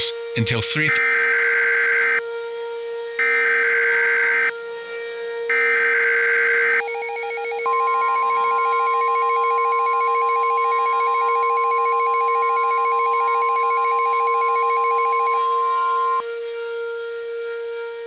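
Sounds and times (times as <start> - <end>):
rapidly pulsing alarm tone: 0.0 - 4.7, 5.4 - 16.3
steady alarm tone: 0.0 - 4.7, 5.4 - 16.3
data burst tones: 6.7 - 16.2.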